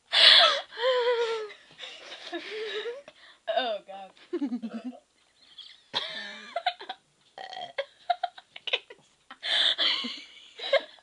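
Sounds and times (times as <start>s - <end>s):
girl burping: 7.4s - 7.9s.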